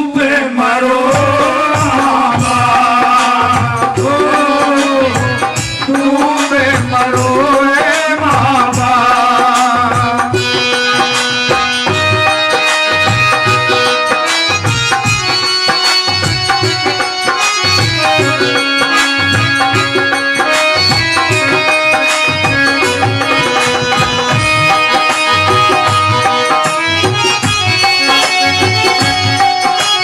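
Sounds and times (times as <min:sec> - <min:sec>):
hand drums beating: 0:01.1 - 0:30.0
folk melody of held notes: 0:08.8 - 0:30.0.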